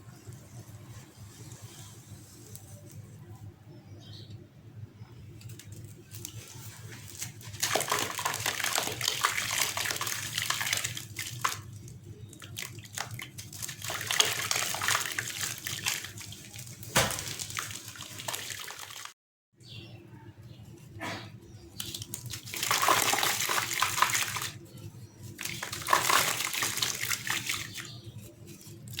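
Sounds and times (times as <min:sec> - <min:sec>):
sand-cement lumps crumbling in water: 0:05.6 - 0:19.1, 0:21.8 - 0:29.0.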